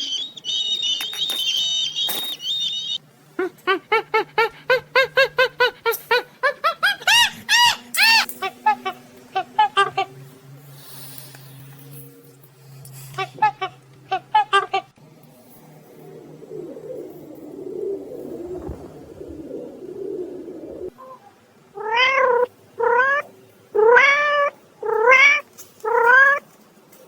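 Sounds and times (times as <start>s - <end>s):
low rough rumbling: 15.8s - 21.0s
cat meowing: 21.8s - 26.4s.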